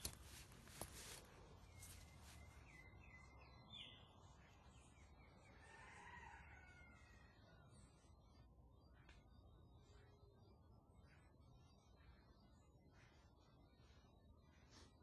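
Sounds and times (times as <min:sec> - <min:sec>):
faint bird chirps: 0:00.0 - 0:15.0
distant rooster crowing: 0:05.4 - 0:07.7.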